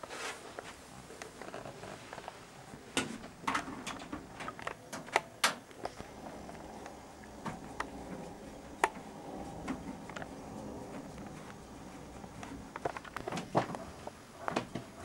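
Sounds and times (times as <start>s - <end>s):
computer parts clicking and knocking: 3.0s - 6.0s.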